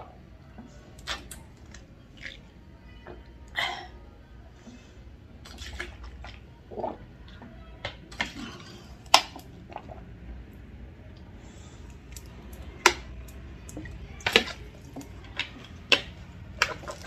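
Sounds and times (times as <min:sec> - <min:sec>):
woman hiccuping: 0:03.5 - 0:04.0.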